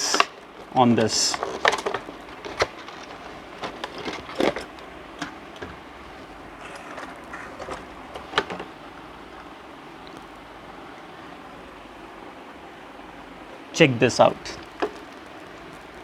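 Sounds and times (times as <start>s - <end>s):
packaging knocks and clicks: 0.0s - 8.8s, 14.6s - 16.0s
packaging rustling: 0.0s - 9.5s, 14.5s - 16.0s.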